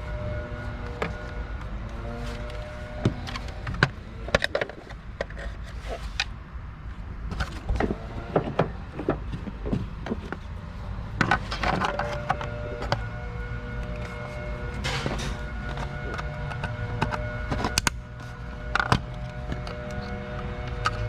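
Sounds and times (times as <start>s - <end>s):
parts and tools clicking: 11.2s - 13.1s, 13.7s - 21.0s.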